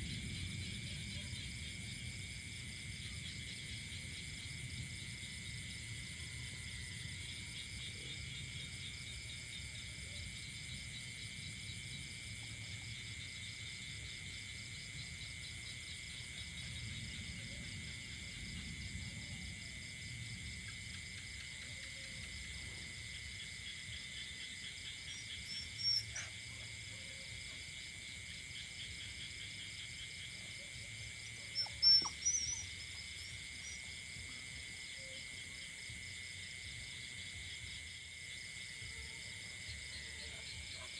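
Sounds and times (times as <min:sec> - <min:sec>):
crickets and insects trilling: 0:00.0 - 0:40.9.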